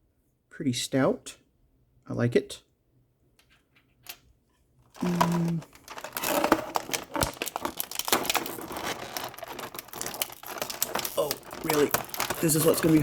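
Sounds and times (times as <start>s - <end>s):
plastic bag crinkling: 5.0s - 13.0s.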